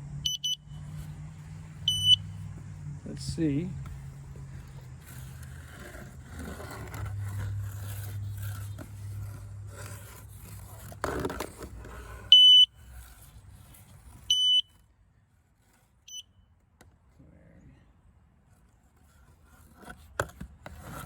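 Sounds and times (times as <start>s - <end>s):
low steady hum: 0.0s - 19.9s
metal detector high beeps: 0.2s - 0.8s, 1.9s - 2.3s, 12.3s - 12.8s, 14.3s - 14.8s.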